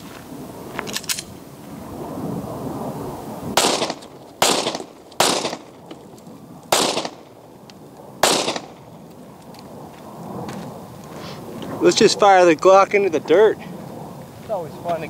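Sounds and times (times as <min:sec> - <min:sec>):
pistol shots: 0:03.6 - 0:05.8, 0:06.7 - 0:07.3, 0:08.2 - 0:08.8.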